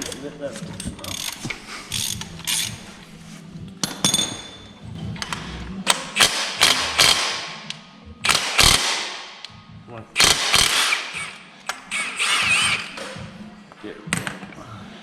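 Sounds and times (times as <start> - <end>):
socket ratchet clicking: 1.1 - 2.7.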